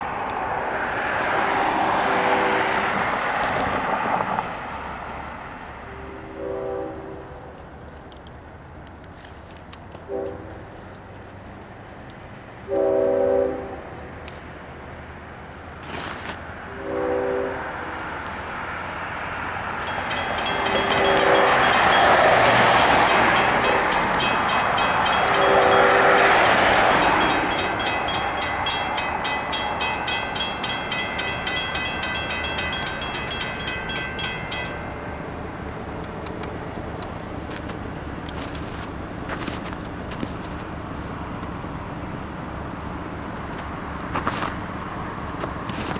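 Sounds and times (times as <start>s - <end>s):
diesel locomotive passing: 0.0s - 45.9s
train horn blasts: 1.3s - 3.0s, 5.8s - 7.6s, 10.0s - 11.1s, 12.6s - 14.4s, 16.5s - 18.4s, 19.6s - 36.0s
mechanical crossing bell ringing: 19.6s - 38.4s.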